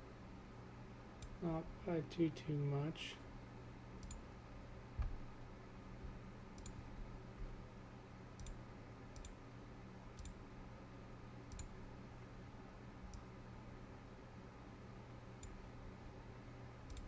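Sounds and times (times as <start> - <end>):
faint low hum: 0.0 - 17.0
computer mouse clicking: 4.0 - 4.2, 6.6 - 6.8, 8.4 - 9.4, 10.2 - 10.4, 11.5 - 11.8, 13.1 - 13.3
soft low thump: 5.0 - 5.2.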